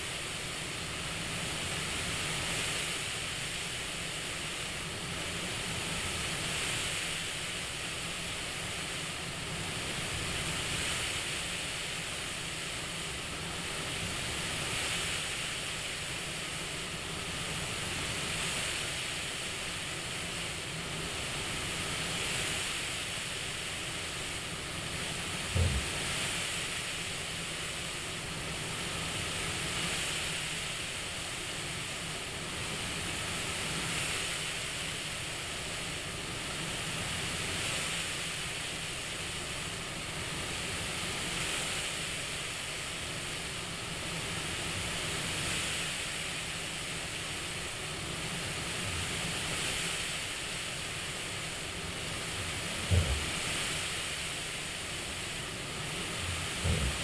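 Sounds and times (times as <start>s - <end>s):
airflow hiss: 0.0s - 57.0s
low thump: 25.5s - 26.0s, 52.8s - 53.4s, 56.6s - 57.0s.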